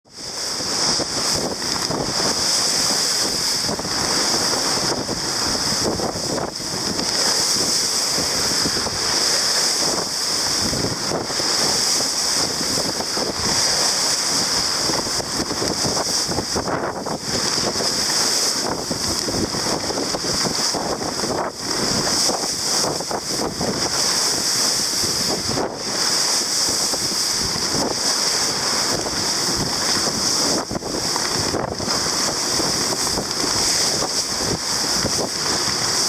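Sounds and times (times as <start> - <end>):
water hissing along hull: 0.1 - 36.0
wind buffeting microphone: 0.1 - 36.0.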